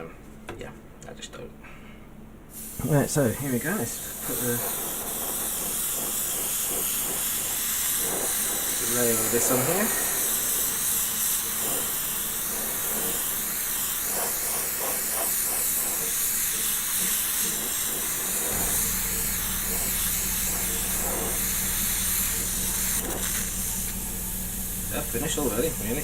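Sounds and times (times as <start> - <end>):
airbrush hissing: 2.5 - 26.0
low steady hum: 18.5 - 26.0.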